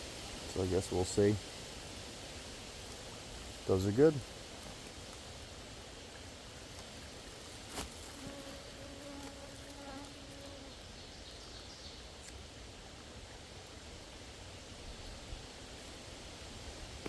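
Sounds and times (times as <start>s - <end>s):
insect buzzing: 7.7s - 10.8s.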